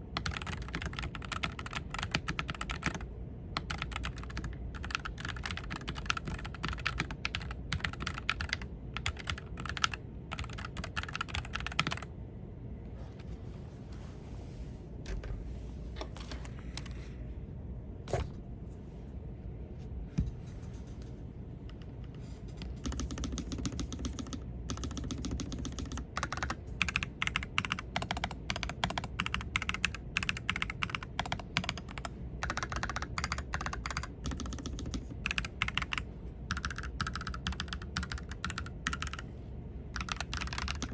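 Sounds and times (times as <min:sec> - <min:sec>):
mechanical keyboard typing: 0:00.2 - 0:12.1, 0:22.6 - 0:39.2, 0:39.9 - 0:40.9.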